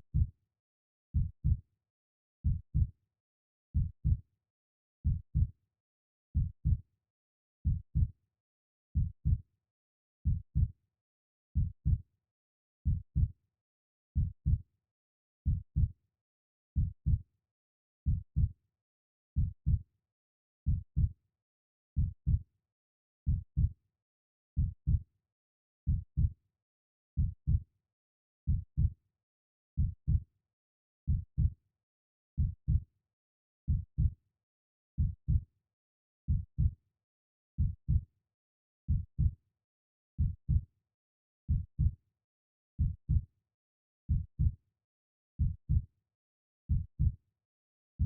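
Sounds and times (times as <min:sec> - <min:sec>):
heartbeat double thump: 0:46.7 - 0:47.1.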